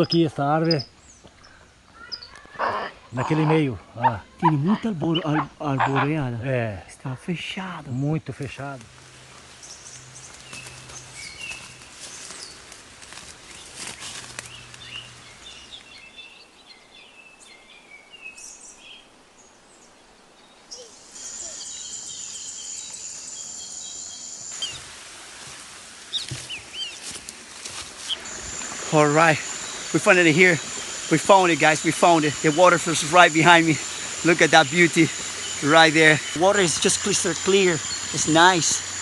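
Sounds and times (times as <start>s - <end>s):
small birds chirping: 0.0s - 6.3s, 7.0s - 24.9s, 26.1s - 39.0s
faint background noise: 0.0s - 39.0s
rustles: 7.8s - 17.6s, 18.3s - 39.0s
high-pitched insect buzz: 20.8s - 25.1s, 26.2s - 39.0s.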